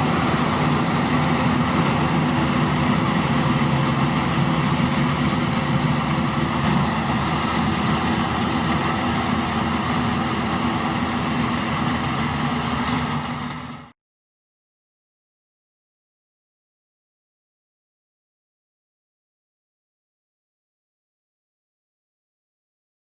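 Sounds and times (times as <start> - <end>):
combine harvester engine drone: 0.0 - 14.0.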